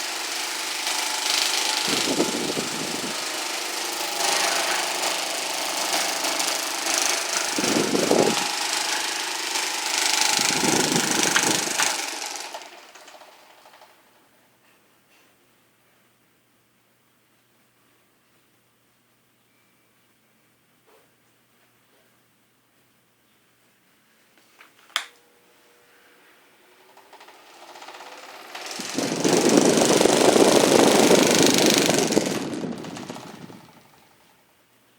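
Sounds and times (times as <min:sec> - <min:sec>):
electric fan motor hum: 0:00.0 - 0:14.3, 0:24.8 - 0:34.4
fan vibrating rattle: 0:00.0 - 0:14.4, 0:26.3 - 0:34.5
low rumbling: 0:28.6 - 0:33.9.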